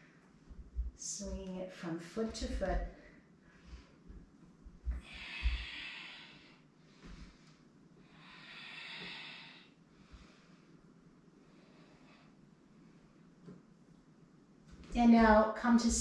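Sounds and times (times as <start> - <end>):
soft low thumps: 0.3 - 6.1, 14.7 - 16.0
person breathing with hissing breaths: 4.9 - 10.8, 11.4 - 12.4.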